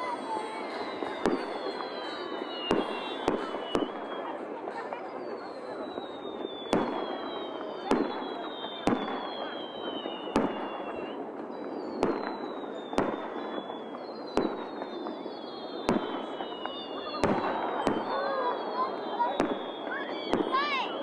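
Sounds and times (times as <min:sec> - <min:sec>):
firework bangs: 0:00.0 - 0:21.0
firework crackling: 0:00.0 - 0:21.0
firework whistles: 0:00.0 - 0:21.0.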